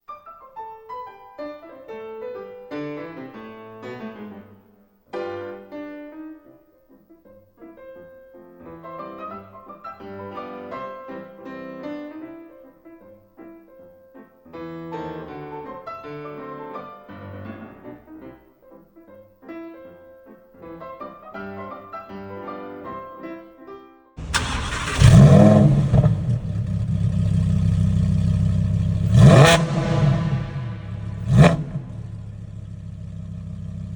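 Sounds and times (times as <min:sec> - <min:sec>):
piano music: 0:00.1 - 0:24.0
car engine revving: 0:24.2 - 0:33.9.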